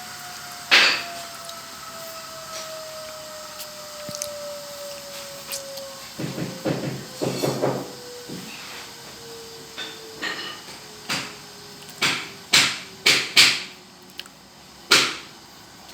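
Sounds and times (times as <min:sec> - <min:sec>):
faint angle grinder whine: 0:00.0 - 0:14.0.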